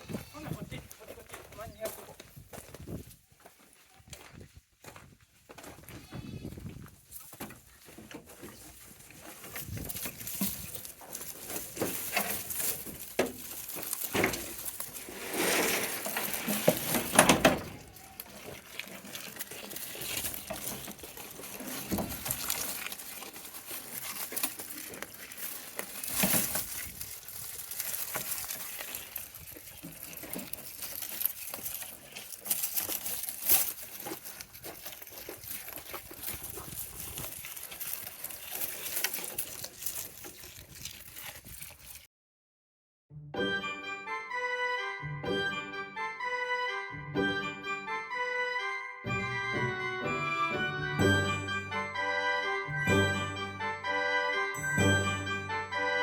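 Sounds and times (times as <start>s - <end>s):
rustling in grass: 6.6s - 42.1s.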